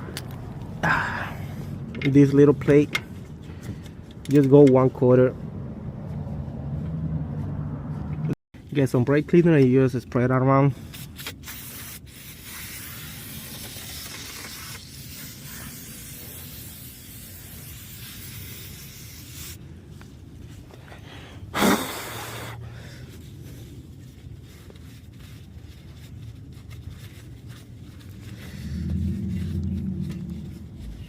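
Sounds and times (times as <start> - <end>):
aerosol can spraying: 11.0 - 19.6.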